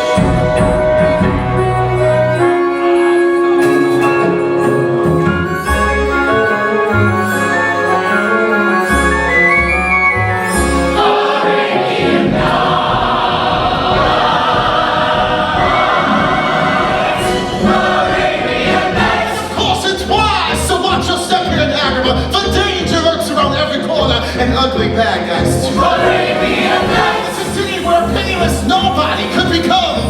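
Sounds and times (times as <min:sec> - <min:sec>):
pulsing bass: 0:00.0 - 0:02.5, 0:12.2 - 0:30.0
choir singing: 0:10.4 - 0:21.6, 0:24.8 - 0:30.0.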